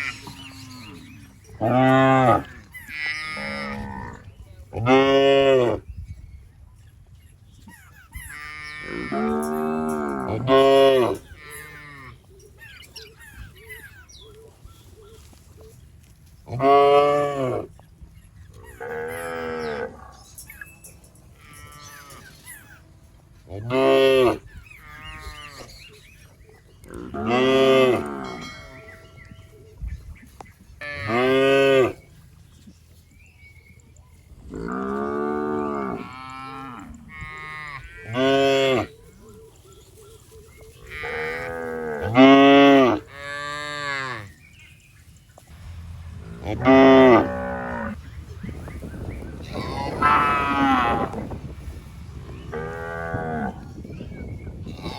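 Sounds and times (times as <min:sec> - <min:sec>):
cows mooing: 0:00.0 - 0:05.8, 0:08.3 - 0:12.2, 0:18.8 - 0:20.3, 0:26.9 - 0:29.0, 0:34.5 - 0:38.9, 0:40.8 - 0:44.3, 0:45.6 - 0:53.8.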